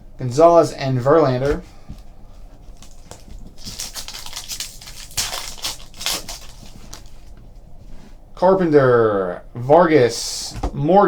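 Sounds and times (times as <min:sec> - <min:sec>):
cards and wrapper crinkling: 0:02.7 - 0:07.2.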